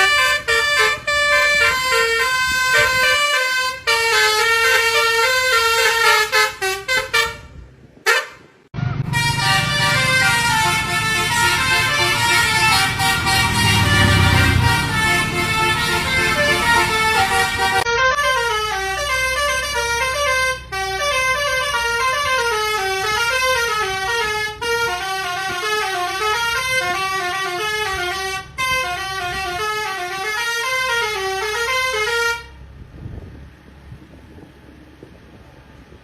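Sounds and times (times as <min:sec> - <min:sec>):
bus musical horn playing tune: 0:00.0 - 0:32.7.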